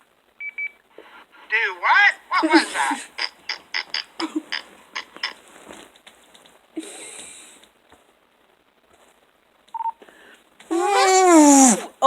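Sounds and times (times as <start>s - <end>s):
person imitating fart: 10.7s - 12.0s.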